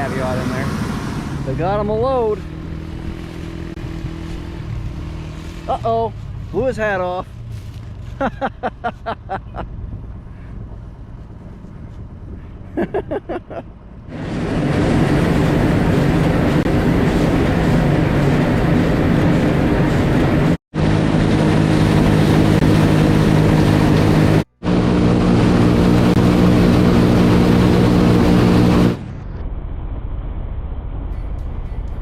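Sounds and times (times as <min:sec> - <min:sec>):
heavy farm machinery running: 0:14.1 - 0:29.0.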